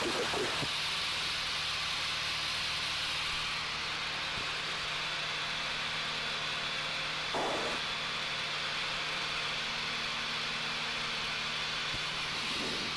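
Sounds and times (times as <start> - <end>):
aircraft engine and propeller drone: 0.0 - 12.9.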